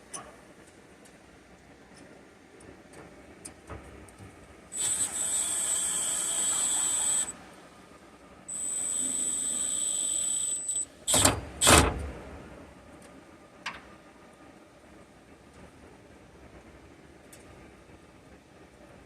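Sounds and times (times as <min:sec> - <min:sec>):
drill motor whining: 0:04.8 - 0:07.4, 0:08.5 - 0:11.2.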